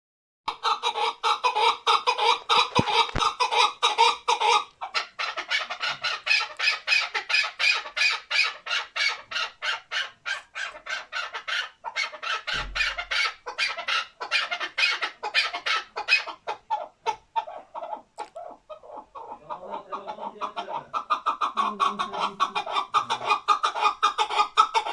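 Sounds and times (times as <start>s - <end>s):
partridge clucking: 1.2s - 4.9s, 12.2s - 13.6s, 18.1s - 24.9s.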